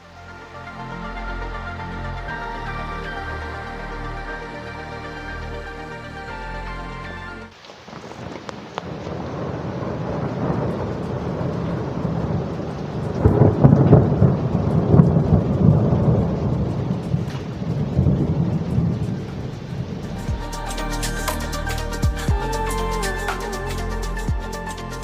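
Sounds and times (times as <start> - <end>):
rain falling: 0.0 - 25.0
thunder rolling: 7.9 - 20.5.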